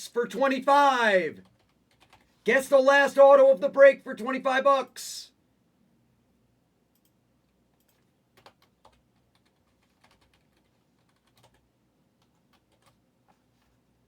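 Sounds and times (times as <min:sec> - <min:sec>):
typing on computer keyboard: 0:01.4 - 0:02.3, 0:07.0 - 0:13.4.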